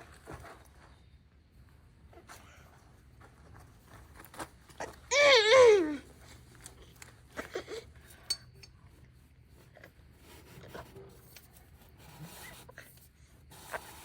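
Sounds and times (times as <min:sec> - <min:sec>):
metallic clinks and taps: 0:08.2 - 0:08.8.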